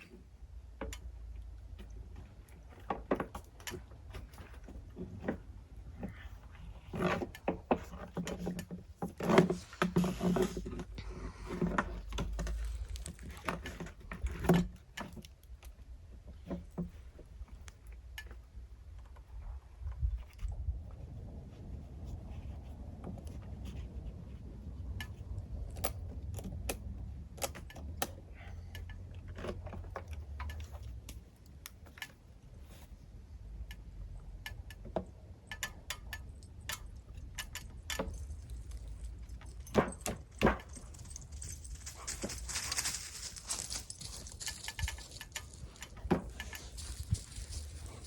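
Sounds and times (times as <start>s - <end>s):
low wind rumble: 18.4s - 29.6s, 33.0s - 48.0s
metal hardware clinking: 35.5s - 47.8s.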